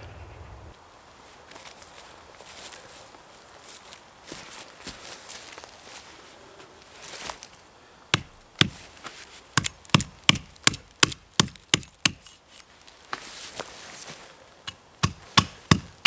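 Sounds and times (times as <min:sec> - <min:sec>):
axe chopping wood: 0:08.2 - 0:08.9, 0:09.6 - 0:12.4, 0:14.7 - 0:16.0.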